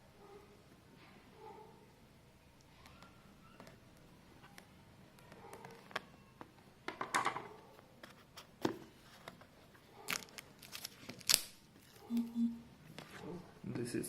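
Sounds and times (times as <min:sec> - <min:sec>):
plastic crinkling: 0:10.0 - 0:12.0.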